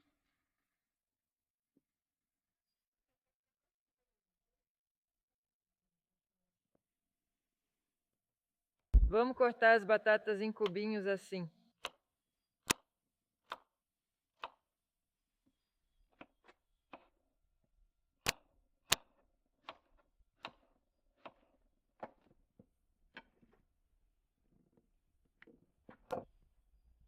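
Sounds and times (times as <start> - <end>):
knife chopping potatoes: 18.2 - 22.3.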